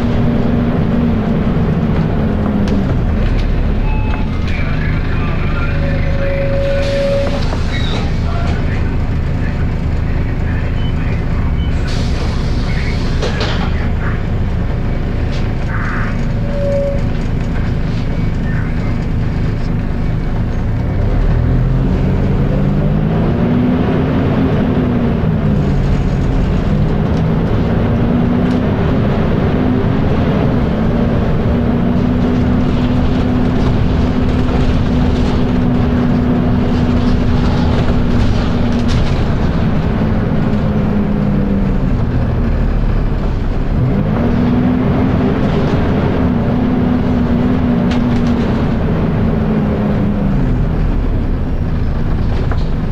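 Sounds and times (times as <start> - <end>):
bus diesel engine: 0.0 - 52.9.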